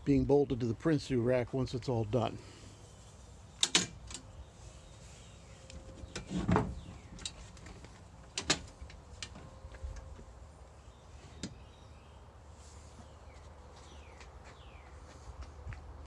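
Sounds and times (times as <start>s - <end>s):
sharp clicks and knocks: 3.6s - 4.3s.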